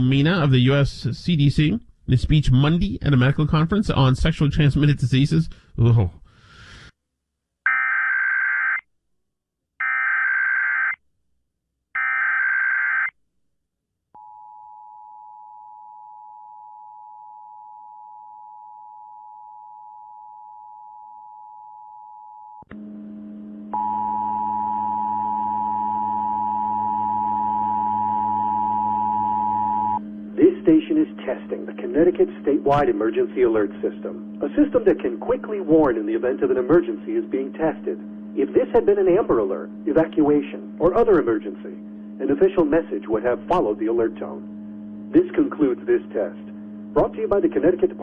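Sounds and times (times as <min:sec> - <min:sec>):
low hum: 0:22.7 - 0:47.4.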